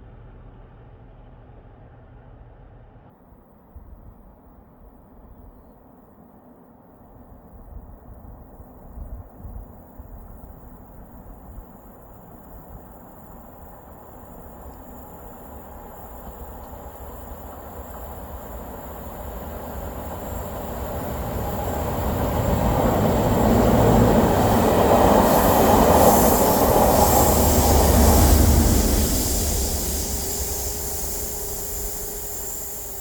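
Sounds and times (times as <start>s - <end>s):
rail and wheel noise: 0.0s - 33.0s
diesel train passing: 6.8s - 33.0s.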